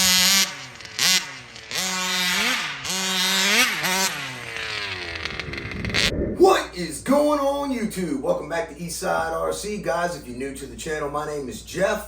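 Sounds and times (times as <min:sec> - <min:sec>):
rc car engine revving: 0:00.0 - 0:06.1.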